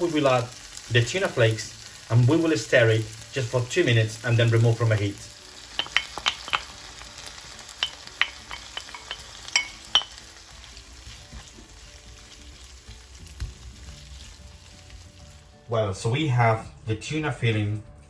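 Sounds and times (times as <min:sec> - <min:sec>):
sofrito sizzling in a pan: 0:00.0 - 0:15.7
spoon clicking against a pan: 0:05.7 - 0:10.4.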